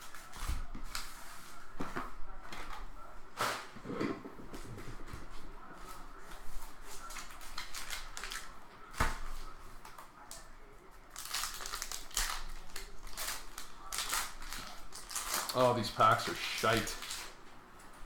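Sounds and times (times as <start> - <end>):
card wrappers tearing and crinkling: 7.0 - 8.6, 11.1 - 17.4.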